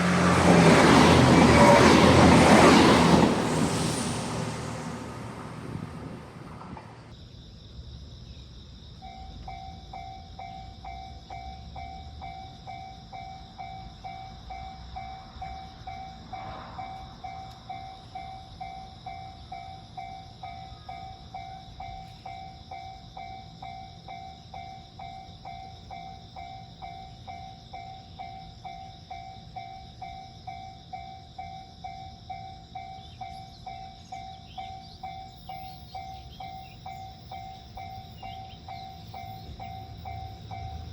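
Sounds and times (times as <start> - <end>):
level-crossing warning bell: 9.0 - 40.9.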